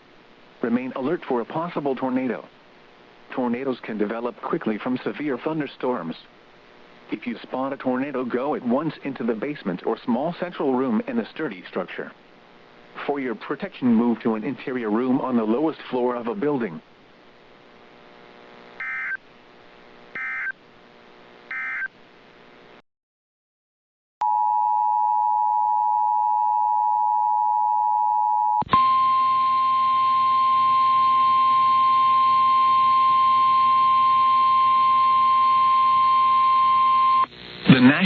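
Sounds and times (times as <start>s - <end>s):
radio hiss: 0.0s - 18.8s, 37.2s - 38.0s
squawking data bursts: 18.8s - 19.2s, 20.2s - 20.5s, 21.5s - 21.9s
steady warning alarm tone: 18.8s - 19.2s, 20.2s - 20.5s, 21.5s - 21.9s.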